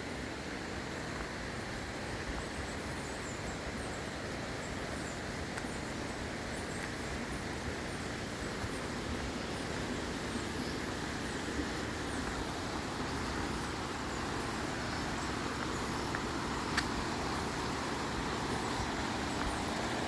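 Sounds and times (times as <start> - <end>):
waterfall rushing: 7.8 - 20.0.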